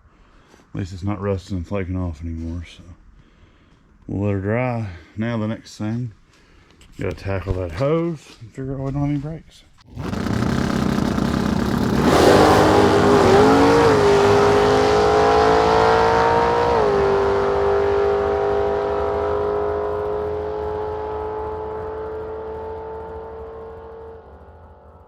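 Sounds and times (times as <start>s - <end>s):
car engine revving: 9.9s - 25.0s.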